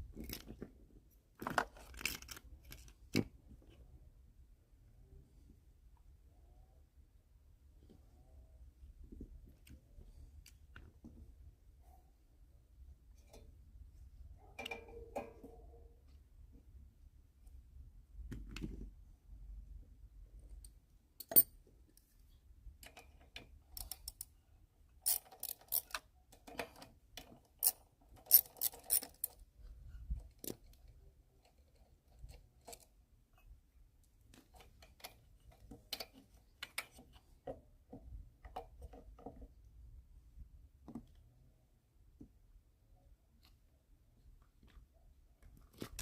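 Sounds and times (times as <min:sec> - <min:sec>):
small metal parts clinking: 0:21.2 - 0:21.6, 0:25.0 - 0:26.8, 0:27.5 - 0:29.4.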